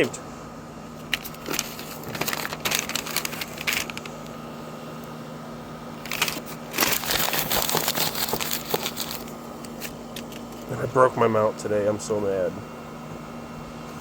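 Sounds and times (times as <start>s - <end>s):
steady low hum: 0.0s - 14.0s
crinkling and rustling: 1.1s - 4.4s, 6.0s - 10.7s.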